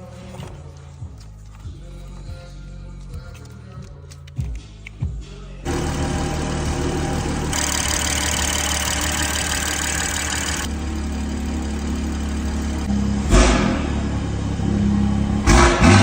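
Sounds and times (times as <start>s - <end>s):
car engine idling: 5.6s - 15.9s.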